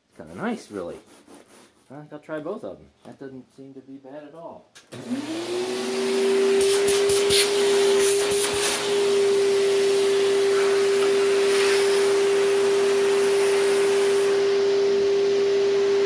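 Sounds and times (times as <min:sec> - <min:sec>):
vacuum cleaner motor whine: 0:04.9 - 0:16.0.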